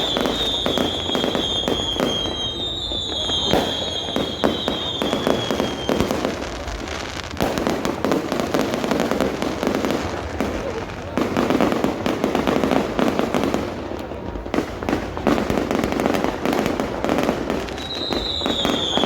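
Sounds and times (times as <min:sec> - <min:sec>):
firework whistles sliding down: 0:00.0 - 0:06.1, 0:17.7 - 0:19.0
crowd voices murmuring: 0:00.0 - 0:19.0
fireworks bangs and crackles: 0:00.0 - 0:19.0.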